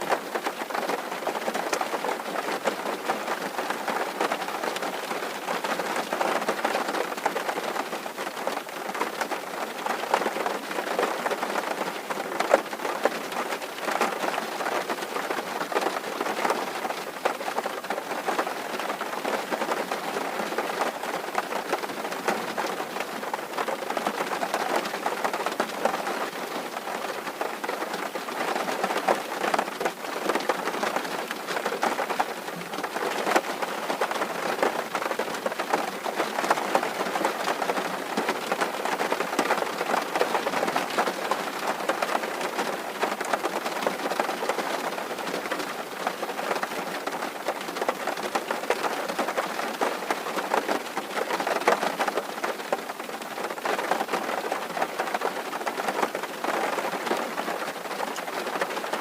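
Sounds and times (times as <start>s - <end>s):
rain on a tin roof: 0.0s - 59.0s.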